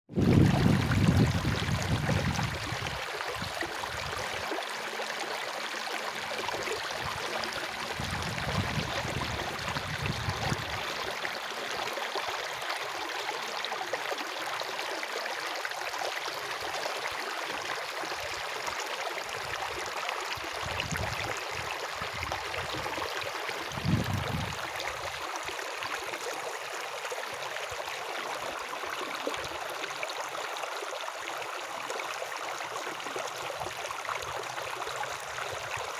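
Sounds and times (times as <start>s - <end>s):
running water rushing: 0.2s - 35.9s.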